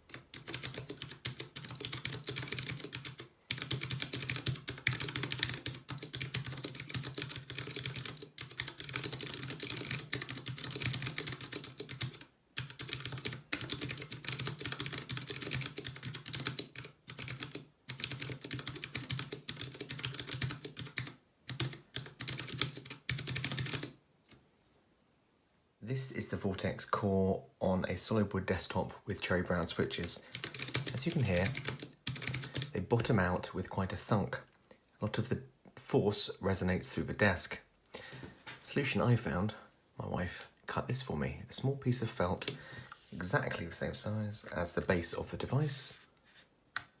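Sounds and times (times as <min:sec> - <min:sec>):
mechanical keyboard typing: 0:00.1 - 0:24.0, 0:30.1 - 0:32.8.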